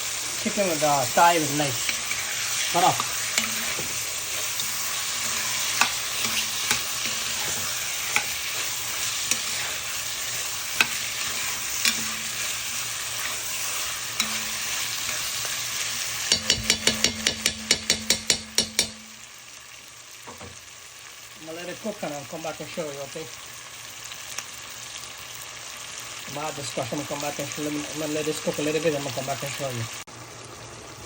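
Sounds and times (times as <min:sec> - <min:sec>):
chicken sizzling in hot oil: 0:00.0 - 0:31.0
spoon clicking against pot: 0:16.3 - 0:19.1.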